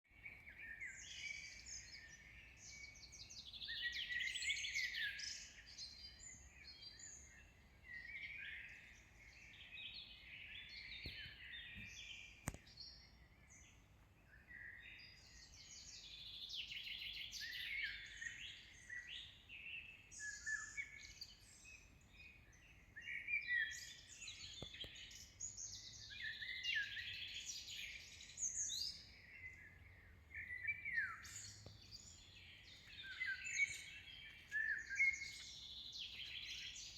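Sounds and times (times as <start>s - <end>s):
songbirds singing: 0.0s - 36.9s
brief clicks: 12.4s - 12.8s.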